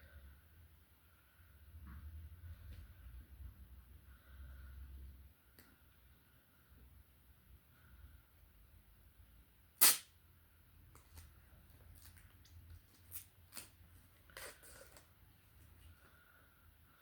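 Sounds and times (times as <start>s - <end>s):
loud sharp crack: 9.8s - 10.2s.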